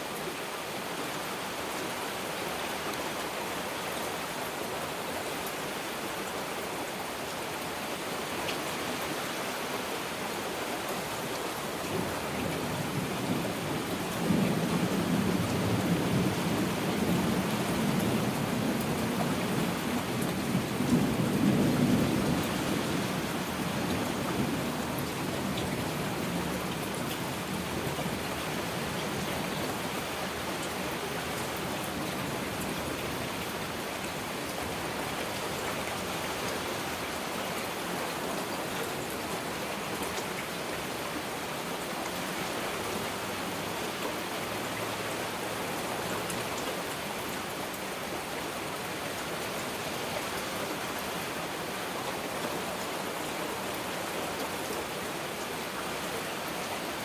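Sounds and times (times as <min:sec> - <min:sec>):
heavy rain falling: 0:00.0 - 0:57.0
low rumble of thunder: 0:12.0 - 0:29.9.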